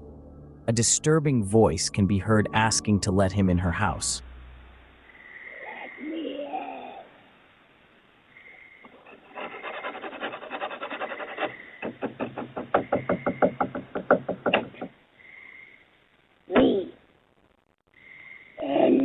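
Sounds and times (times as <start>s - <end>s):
scratching on wooden door: 8.9s - 14.9s
rapid knocking on door: 11.8s - 15.0s.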